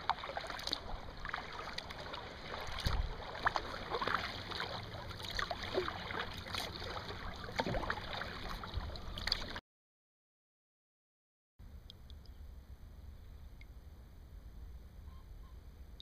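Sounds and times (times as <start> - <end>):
paddle dipping and dripping: 0.0 - 9.6
water trickling against hull: 0.0 - 9.6.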